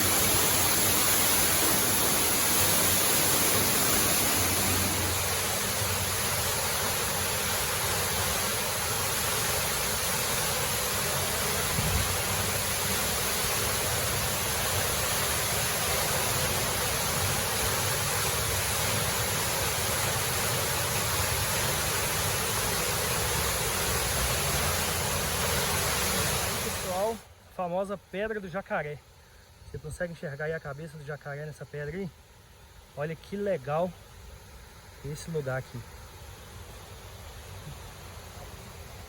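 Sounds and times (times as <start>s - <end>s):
waterfall rushing: 0.0s - 27.8s.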